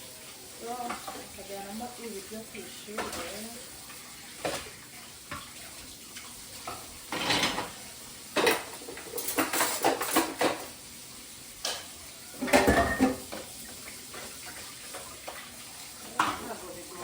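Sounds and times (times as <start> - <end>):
dishes and cutlery clattering: 3.0 - 3.4, 4.3 - 5.6, 6.2 - 10.8, 11.6 - 16.7.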